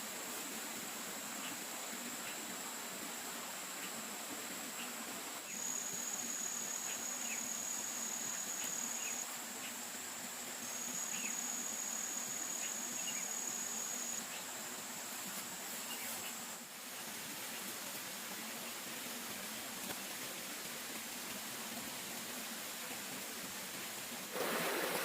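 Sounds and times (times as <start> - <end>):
insects trilling: 4.7 - 16.7
faint bird chirps: 4.8 - 9.8, 10.7 - 14.6.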